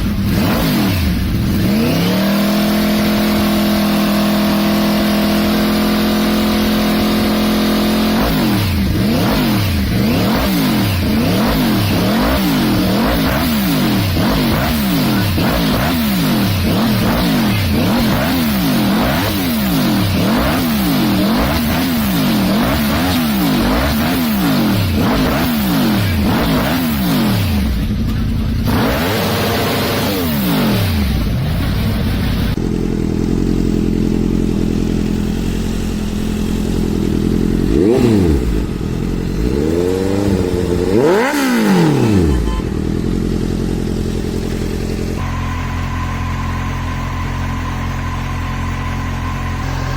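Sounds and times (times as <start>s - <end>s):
motorcycle engine revving: 0.0s - 49.9s
motorcycle idling and blipped: 0.0s - 49.9s.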